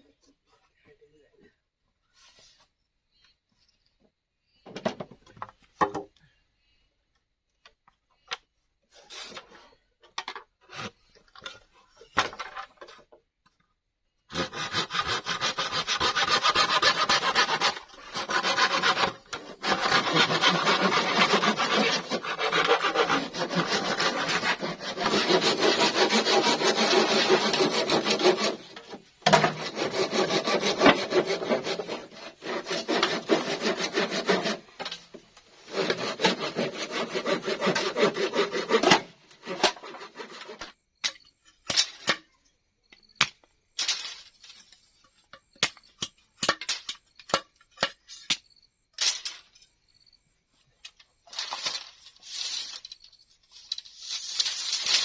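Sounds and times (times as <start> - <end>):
hand saw cutting bamboo: 14.3 - 35.0, 35.6 - 40.7.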